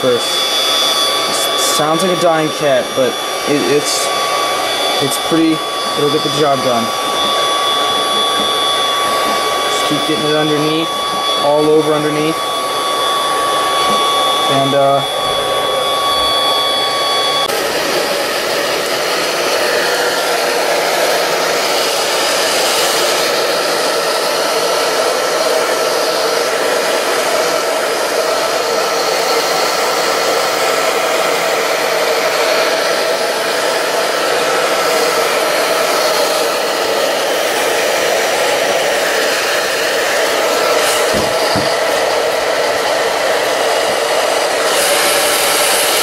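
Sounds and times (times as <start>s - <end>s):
thin whine from tap: 7.1s - 9.4s, 13.8s - 14.1s, 41.0s - 41.8s.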